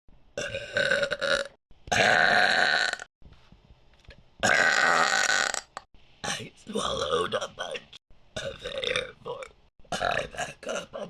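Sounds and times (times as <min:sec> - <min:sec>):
person burping: 0:00.4 - 0:03.1, 0:04.4 - 0:05.8, 0:08.4 - 0:11.0.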